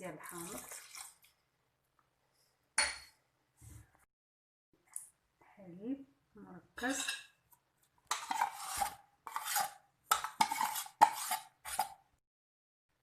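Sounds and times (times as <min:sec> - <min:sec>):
spoon scraping a tin: 0:08.1 - 0:12.0.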